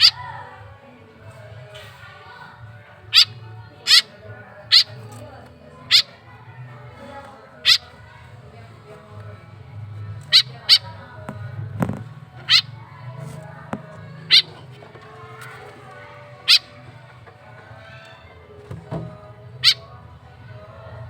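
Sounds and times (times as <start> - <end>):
baby bird cheeping: 3.1 - 5.0, 5.8 - 6.2, 7.6 - 7.9, 10.2 - 11.0, 12.4 - 12.8, 14.1 - 14.8, 16.4 - 16.9, 19.6 - 20.0.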